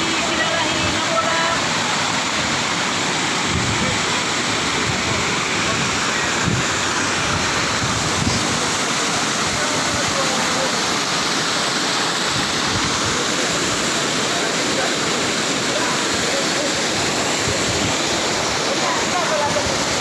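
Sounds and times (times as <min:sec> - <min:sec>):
waterfall pouring: 0:00.0 - 0:20.0.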